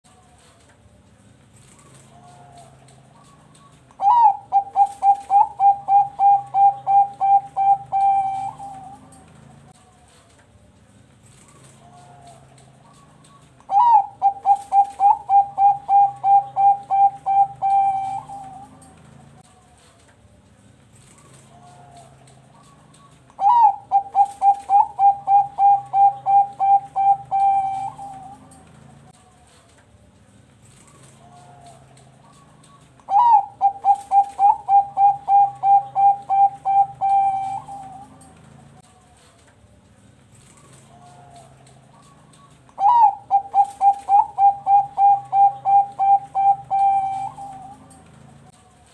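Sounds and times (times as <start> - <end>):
dove cooing: 1.6 - 10.2, 11.3 - 19.4, 21.0 - 29.6, 30.7 - 38.9, 40.4 - 48.6.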